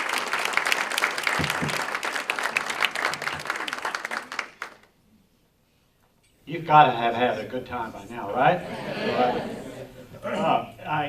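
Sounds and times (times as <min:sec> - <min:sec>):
audience applauding: 0:00.0 - 0:05.0.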